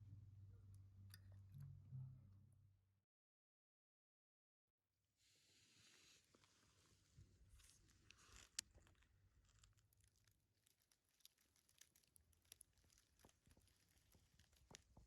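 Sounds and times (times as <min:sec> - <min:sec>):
faint clicks and crackles: 0:06.3 - 0:15.0.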